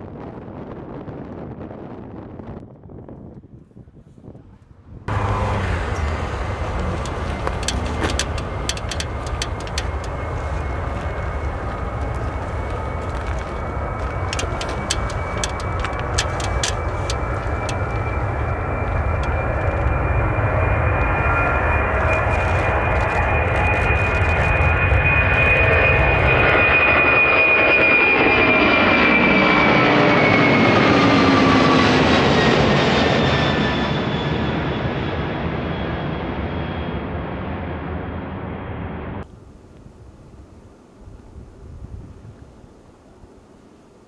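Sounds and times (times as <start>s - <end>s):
airplane passing close by: 3.5s - 44.0s
sharp ticks: 7.0s - 10.2s, 14.2s - 18.2s.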